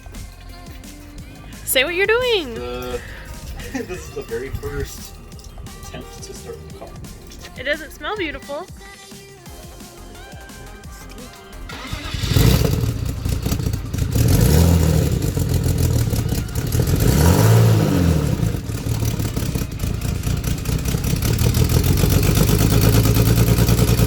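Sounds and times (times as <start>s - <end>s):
car engine starting and revving: 11.7s - 24.0s.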